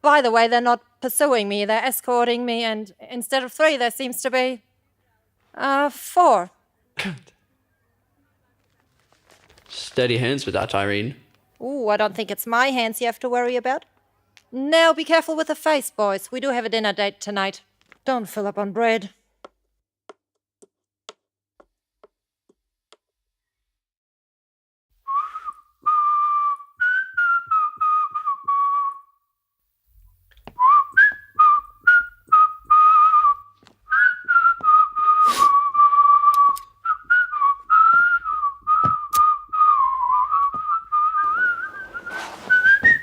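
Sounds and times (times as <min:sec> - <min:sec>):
person whistling a tune: 0:25.1 - 0:29.2, 0:30.6 - 0:43.0.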